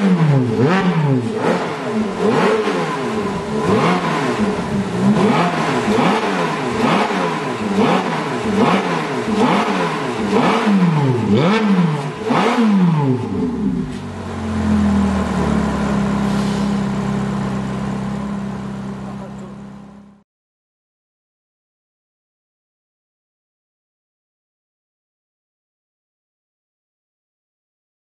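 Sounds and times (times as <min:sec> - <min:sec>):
car engine revving: 0:00.0 - 0:20.2.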